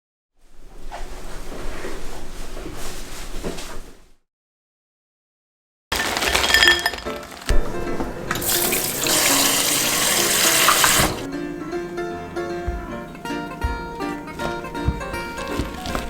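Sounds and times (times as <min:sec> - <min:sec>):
background music: 0:06.3 - 0:16.0
tap water running into sink: 0:08.3 - 0:11.3.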